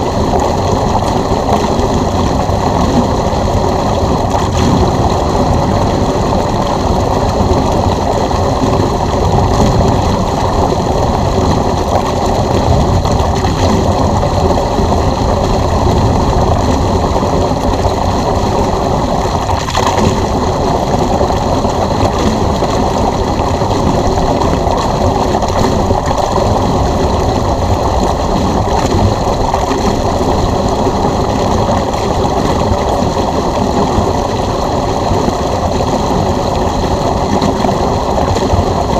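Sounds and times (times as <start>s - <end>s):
pump motor whine: 0.0s - 38.9s
water gushing from hose: 0.0s - 38.9s.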